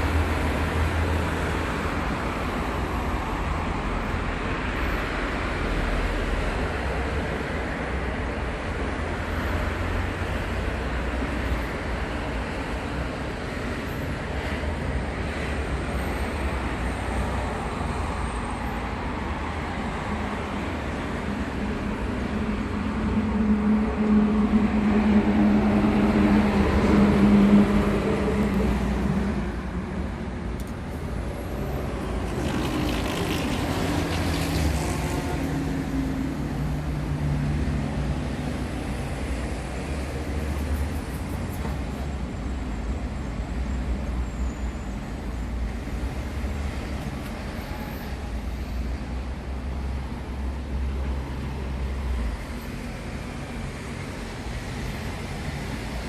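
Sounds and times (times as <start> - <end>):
road traffic rumble: 0.0 - 56.0
passing vehicle engine hum: 19.5 - 41.9.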